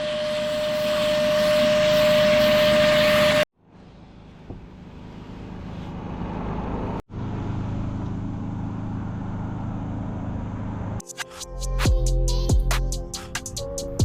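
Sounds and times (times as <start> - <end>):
low motor hum: 0.0 - 11.0
music: 11.0 - 14.0.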